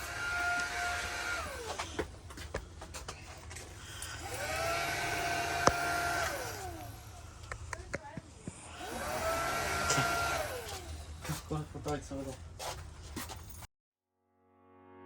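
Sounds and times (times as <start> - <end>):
small electric motor whining: 0.0 - 2.1, 3.6 - 7.8, 8.4 - 11.3.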